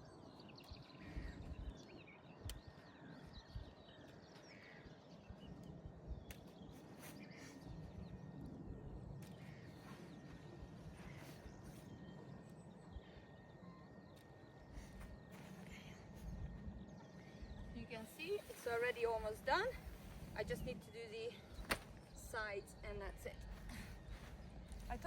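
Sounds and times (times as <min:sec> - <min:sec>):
faint birdsong: 0:00.0 - 0:25.0
low wind rumble: 0:00.0 - 0:25.0
tent clips clicking and rustling: 0:21.6 - 0:22.1.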